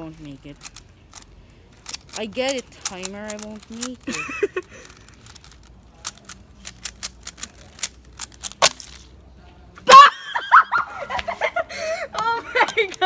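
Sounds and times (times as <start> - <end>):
puzzle cube layers clicking: 0.1 - 9.1
loud high-pitched yell: 9.9 - 10.9.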